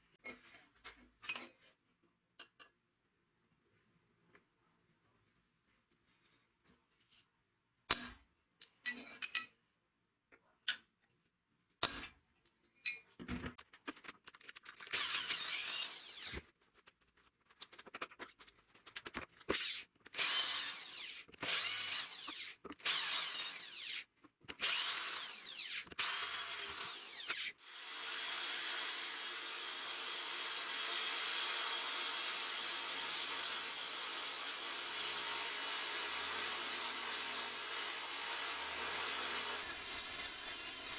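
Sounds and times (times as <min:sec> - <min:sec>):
handheld power tool running: 0:14.9 - 0:16.4, 0:19.6 - 0:24.0, 0:24.6 - 0:40.9.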